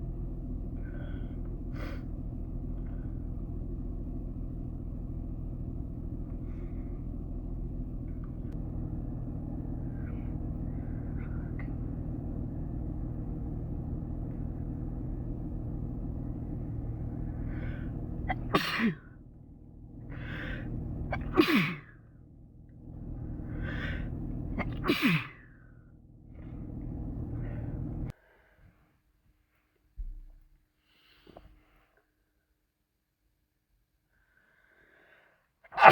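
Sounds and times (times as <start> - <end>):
steady low hum: 0.0 - 28.1
person sneezing: 18.3 - 19.1, 21.1 - 21.9, 24.6 - 25.4, 35.7 - 35.9.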